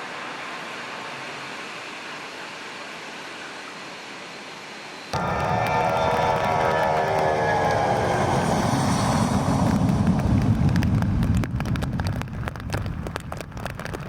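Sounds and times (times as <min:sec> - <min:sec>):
jet engine rumble: 0:00.0 - 0:14.0
crackling clicks: 0:09.7 - 0:14.0.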